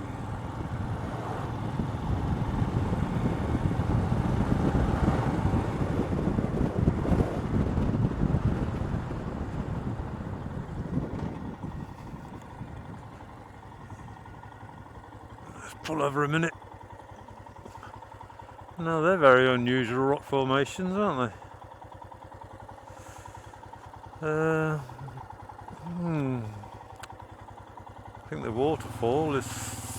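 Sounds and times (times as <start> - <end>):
motorcycle engine running: 0.0 - 29.9
wind rushing over microphone: 0.3 - 13.1.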